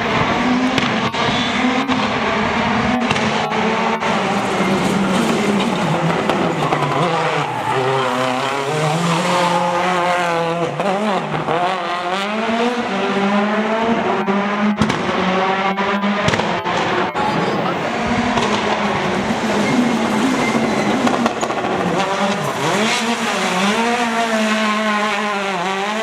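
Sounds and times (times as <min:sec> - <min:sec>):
rally car engine revving: 0:00.0 - 0:26.0
tyres squealing: 0:18.9 - 0:24.1.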